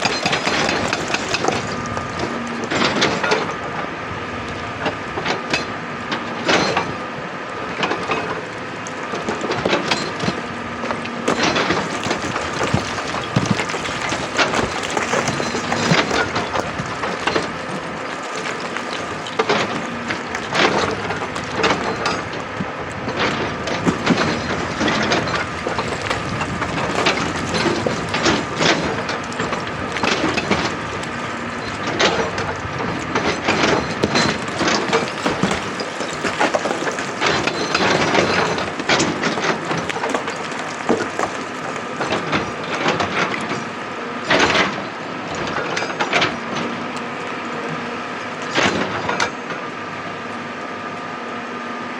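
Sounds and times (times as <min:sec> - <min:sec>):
stone scraping metal bucket: 0:00.0 - 0:02.6, 0:09.0 - 0:22.3, 0:23.6 - 0:32.1, 0:33.9 - 0:42.7.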